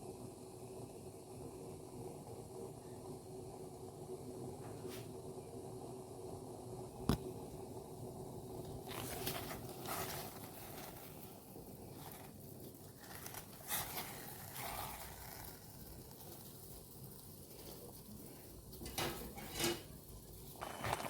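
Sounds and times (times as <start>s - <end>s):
low steady hum: 0.0s - 21.0s
handling scrapes and rustles: 8.7s - 16.4s.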